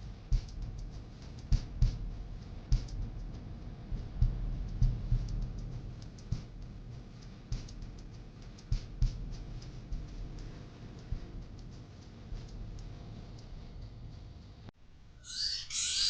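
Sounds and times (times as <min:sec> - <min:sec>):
background music with low bass: 0:00.0 - 0:14.7
sharp clicks and taps: 0:00.3 - 0:02.0, 0:02.7 - 0:03.4, 0:04.2 - 0:13.5.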